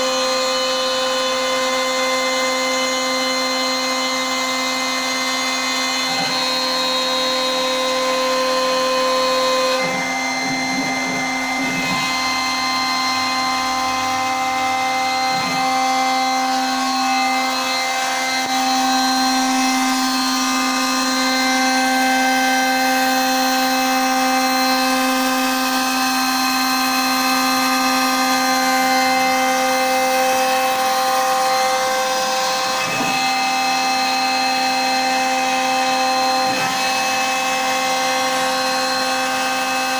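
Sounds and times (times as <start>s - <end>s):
router spindle whine: 0.0s - 39.9s.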